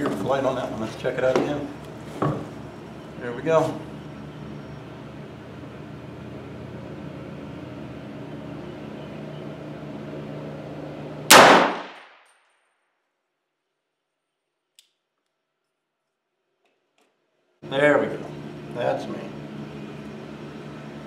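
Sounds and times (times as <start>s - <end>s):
steady low hum: 0.0s - 12.2s, 17.4s - 21.0s
rifle shot: 11.3s - 12.3s.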